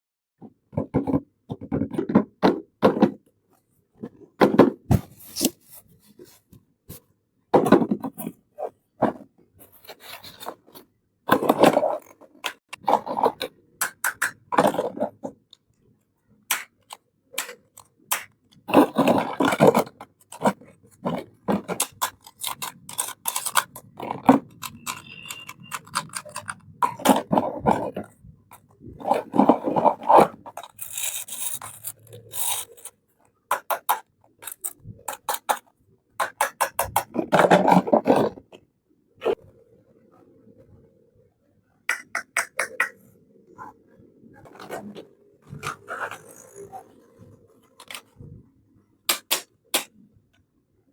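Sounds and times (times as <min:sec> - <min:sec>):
packaging scraping and rubbing: 0:04.9 - 0:06.5, 0:16.6 - 0:35.6, 0:44.5 - 0:48.2
plastic pieces clicking and tapping: 0:12.4 - 0:15.0, 0:16.5 - 0:27.9, 0:33.5 - 0:38.3, 0:41.9 - 0:43.0, 0:49.1 - 0:49.9.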